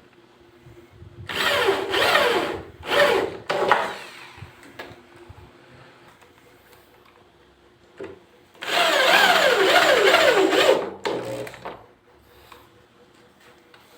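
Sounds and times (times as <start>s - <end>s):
power tool cutting wood: 1.3s - 3.9s, 8.6s - 11.5s.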